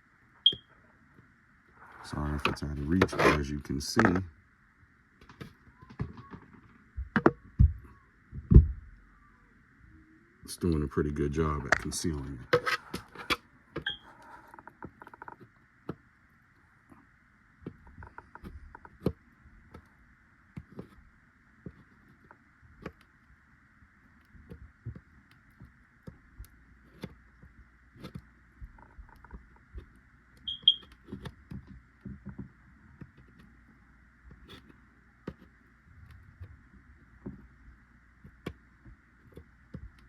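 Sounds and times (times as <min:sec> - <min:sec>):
faint high-pitched hum: 0:00.0 - 0:40.0
tool tapping and scraping plastic: 0:02.4 - 0:03.4, 0:17.6 - 0:19.9, 0:24.3 - 0:33.6, 0:34.3 - 0:36.6, 0:38.2 - 0:40.0.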